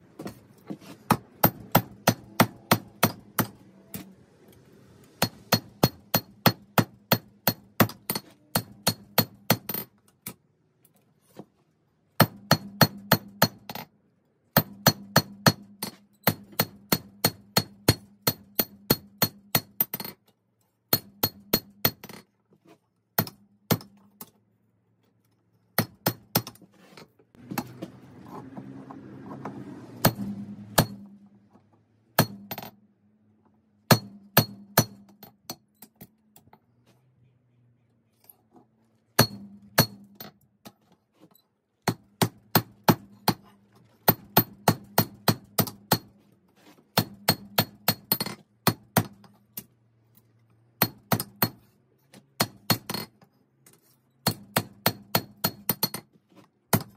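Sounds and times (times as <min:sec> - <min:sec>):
hammer striking steel on anvil: 0:30.0 - 0:31.2.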